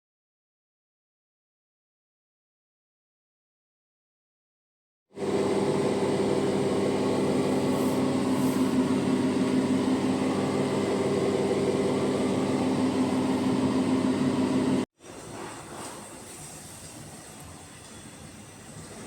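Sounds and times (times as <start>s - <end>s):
dishwasher running: 5.2s - 16.2s.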